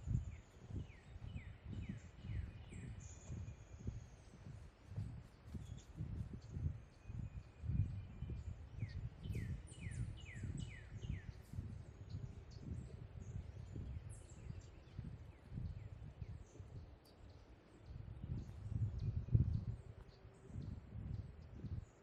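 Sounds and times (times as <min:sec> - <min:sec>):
footsteps on a trail: 0:00.0 - 0:08.3
high bird chirps: 0:05.5 - 0:15.8
songbird whistled notes: 0:07.0 - 0:11.4.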